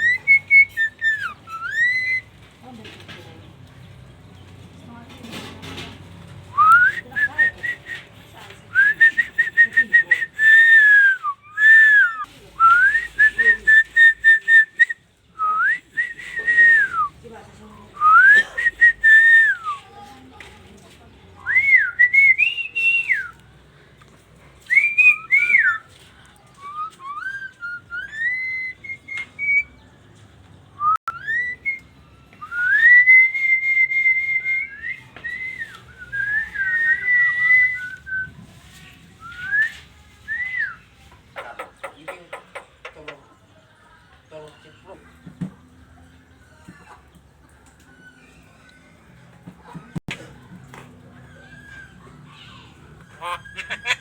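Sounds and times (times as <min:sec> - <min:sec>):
starling whistling: 0:00.0 - 0:02.3, 0:24.7 - 0:25.9, 0:26.6 - 0:29.8, 0:30.8 - 0:38.4.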